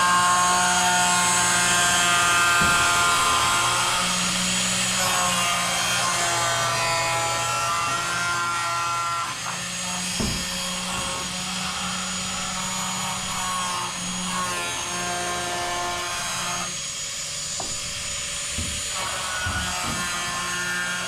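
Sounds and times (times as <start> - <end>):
angle grinder cutting metal: 0.0 - 21.0
sheet metal knocks: 0.9 - 5.3, 10.0 - 21.0.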